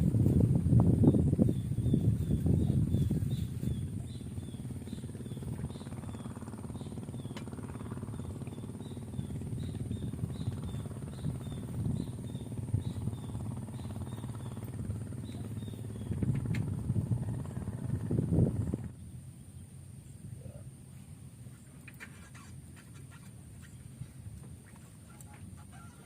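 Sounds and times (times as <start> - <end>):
low rumble: 0.0 - 19.0
faint steady high whine: 0.0 - 26.0.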